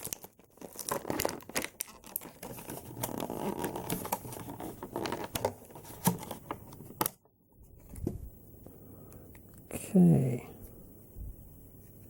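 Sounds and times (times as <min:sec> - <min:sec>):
plastic packaging rustling: 0:00.0 - 0:08.1.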